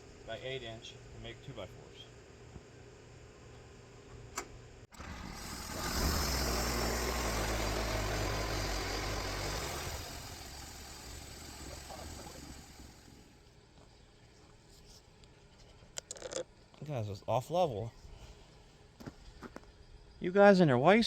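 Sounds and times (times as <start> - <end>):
sawmill engine running: 4.9 - 13.4.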